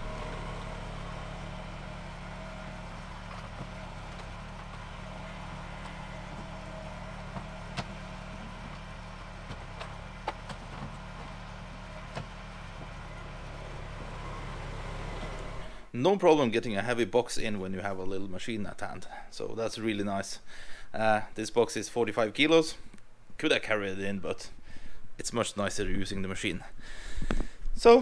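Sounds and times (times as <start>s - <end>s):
diesel engine running: 0.0s - 15.9s.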